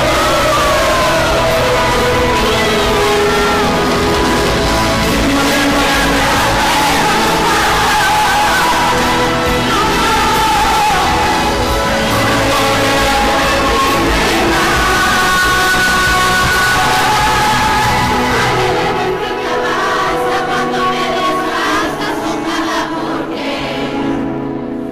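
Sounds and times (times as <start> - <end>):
pop-rock music: 0.0 - 24.9.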